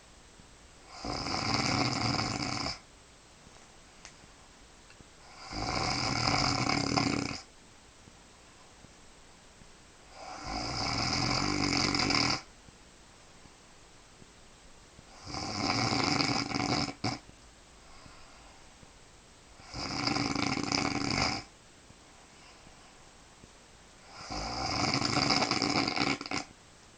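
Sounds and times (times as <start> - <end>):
woman snoring: 0.9 - 2.8, 5.2 - 7.5, 10.1 - 12.5, 15.1 - 17.2, 19.6 - 21.5, 24.0 - 26.5.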